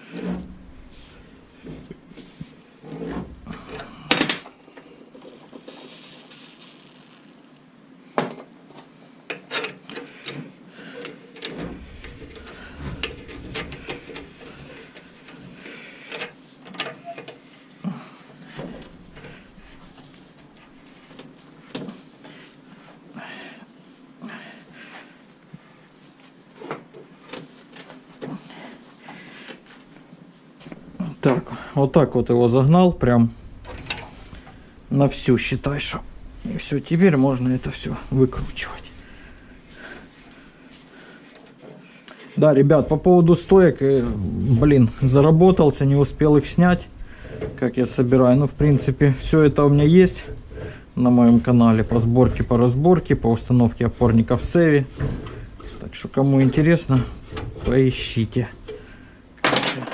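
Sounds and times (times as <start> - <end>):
metal scraping: 0.0 - 4.1, 11.4 - 15.8, 32.1 - 40.5, 42.7 - 59.1
metal clicks and knocks: 11.4 - 15.5, 33.5 - 34.6.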